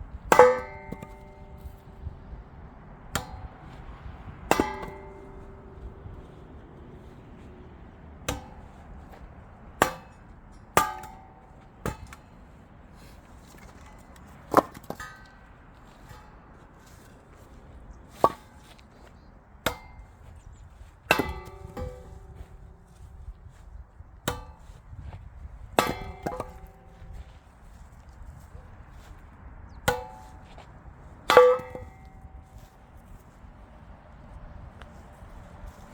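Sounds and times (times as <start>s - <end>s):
axe chopping firewood: 0.2s - 2.0s, 3.1s - 7.2s, 8.2s - 12.3s, 13.0s - 23.6s, 24.2s - 27.9s, 29.8s - 32.8s.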